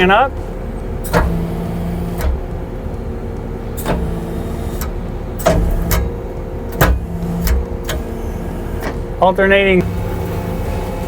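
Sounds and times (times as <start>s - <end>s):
diesel engine running: 0.0s - 11.0s
hydraulic flow: 0.0s - 11.0s
sharp clicks: 1.0s - 9.2s.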